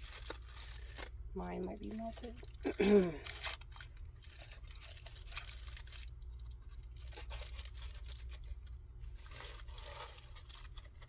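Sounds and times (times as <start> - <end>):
wrapper rustling and crinkling: 0.0 - 11.0.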